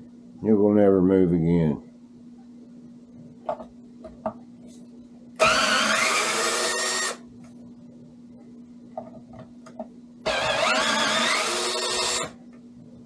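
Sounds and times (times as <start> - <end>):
cordless drill spinning: 5.4 - 7.2, 10.3 - 12.4.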